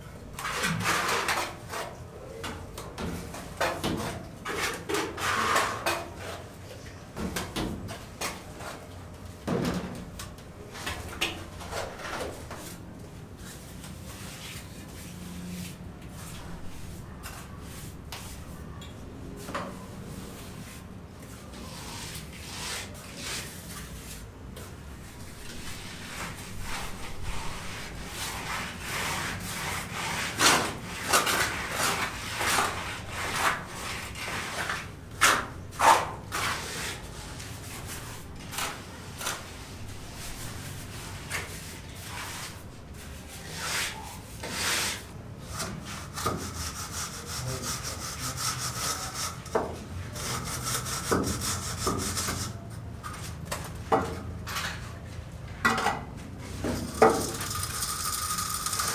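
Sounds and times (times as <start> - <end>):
hand tools scraping: 25.5 - 39.5, 40.2 - 53.8, 55.8 - 58.9
rasping strokes: 45.6 - 49.6.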